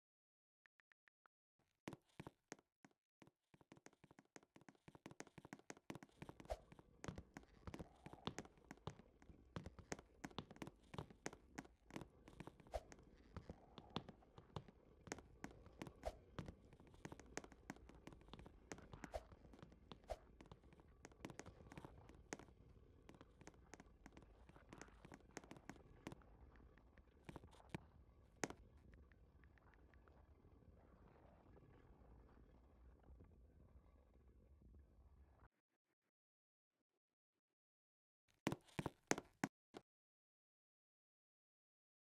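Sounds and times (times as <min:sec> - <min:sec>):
faint clicks and taps: 0:03.2 - 0:30.1.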